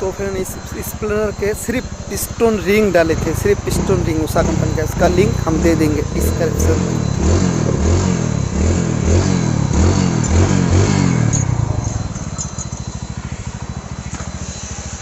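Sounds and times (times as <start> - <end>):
man talking: 0.0 - 7.1
motorcycle engine revving and idling: 0.0 - 15.0.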